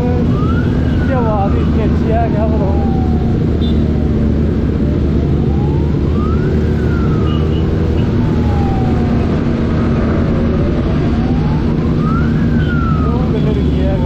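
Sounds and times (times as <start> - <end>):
engine rumble: 0.0 - 14.0
wailing siren: 0.0 - 14.0
wind: 0.0 - 14.0.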